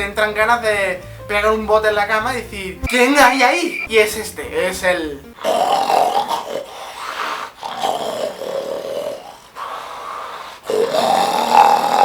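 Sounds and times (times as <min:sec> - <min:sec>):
deep growling snoring: 0:05.4 - 0:09.5, 0:10.6 - 0:12.0.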